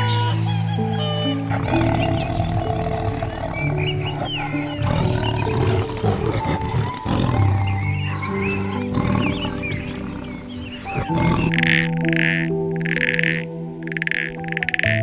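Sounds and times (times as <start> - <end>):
birds chirping faintly: 0.0 - 11.6
soft piano music: 0.0 - 15.0
big cat growling and roaring: 1.4 - 11.6.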